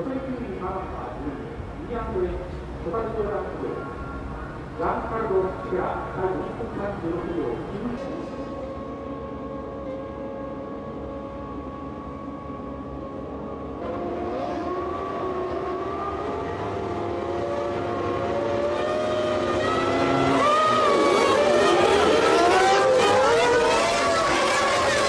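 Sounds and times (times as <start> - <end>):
racing engines revving: 7.3 - 25.0.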